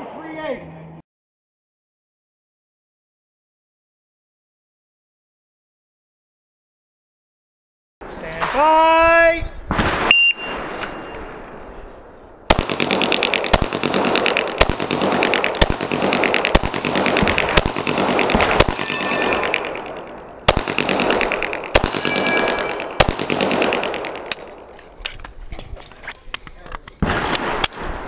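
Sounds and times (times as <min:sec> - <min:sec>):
shot timer beep: 0:10.1 - 0:10.6
pistol shots echoing: 0:12.5 - 0:24.7.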